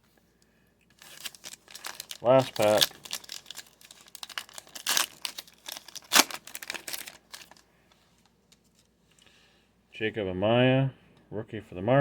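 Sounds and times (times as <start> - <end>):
foil wrapper tearing and crinkling: 0.9 - 7.6.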